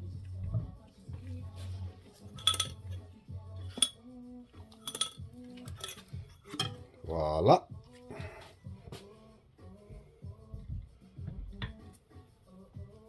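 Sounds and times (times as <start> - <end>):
metal parts clinking: 2.2 - 3.0, 3.7 - 4.0, 4.7 - 6.8.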